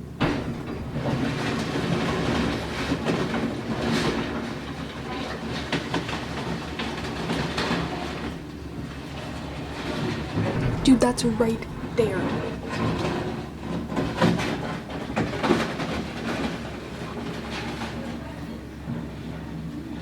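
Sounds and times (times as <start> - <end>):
demolition machine engine hum: 8.0 - 17.9.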